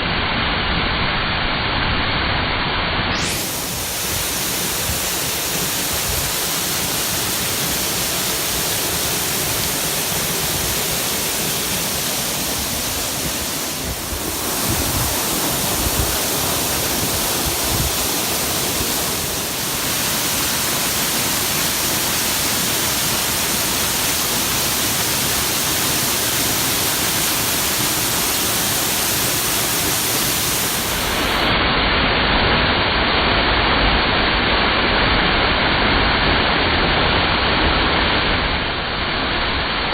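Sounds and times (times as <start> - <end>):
waterfall rushing: 3.1 - 31.8.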